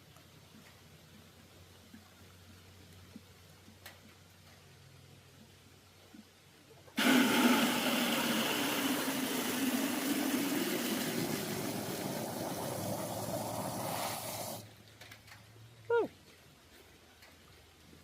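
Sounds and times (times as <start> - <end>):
water gushing from tap into jug: 7.0 - 14.6.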